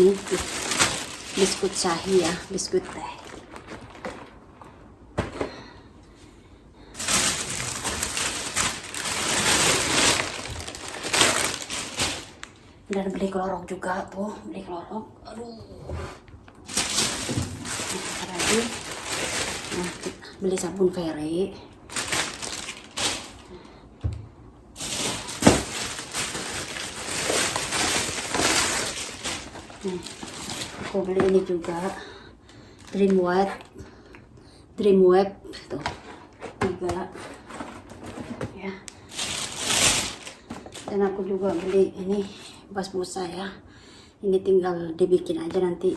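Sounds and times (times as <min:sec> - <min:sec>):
plastic packaging crinkling: 0:00.0 - 0:05.0, 0:06.9 - 0:12.9, 0:16.6 - 0:21.1, 0:21.7 - 0:23.7, 0:24.8 - 0:32.0, 0:32.6 - 0:33.8, 0:38.9 - 0:41.8
items being set down: 0:03.2 - 0:05.7.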